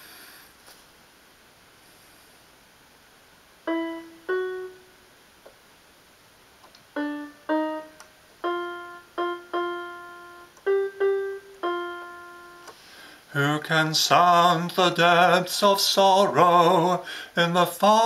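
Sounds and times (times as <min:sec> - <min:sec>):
slow piano melody: 0:03.6 - 0:05.0, 0:06.9 - 0:12.8.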